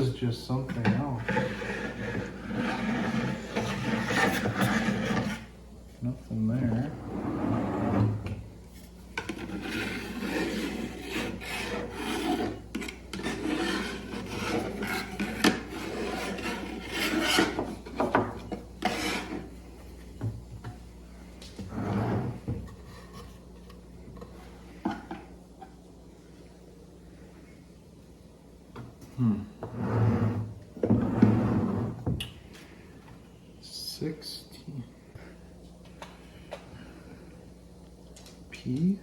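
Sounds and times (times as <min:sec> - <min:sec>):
wooden box rubbing and scraping: 0:01.3 - 0:05.5.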